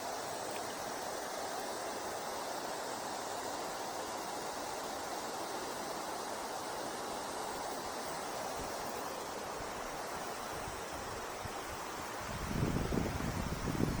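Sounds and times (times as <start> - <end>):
river flowing: 0.0 - 14.0
wind buffeting microphone: 10.6 - 14.0.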